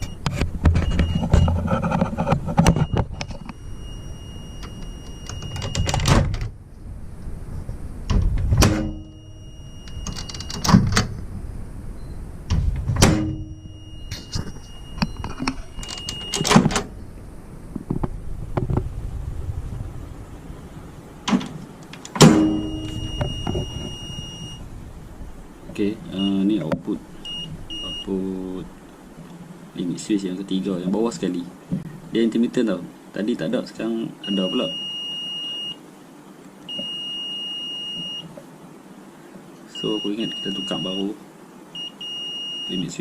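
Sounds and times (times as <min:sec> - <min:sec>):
multimeter continuity beep: 0:00.0 - 0:01.6, 0:02.6 - 0:06.0, 0:08.9 - 0:10.8, 0:11.9 - 0:12.3, 0:13.2 - 0:16.7, 0:22.4 - 0:24.6, 0:26.2 - 0:26.6, 0:27.2 - 0:28.2, 0:34.2 - 0:35.8, 0:36.7 - 0:38.3, 0:39.8 - 0:41.2, 0:41.8 - 0:43.0
switch and door clicks: 0:04.6 - 0:06.5, 0:09.8 - 0:11.2, 0:14.1 - 0:16.9.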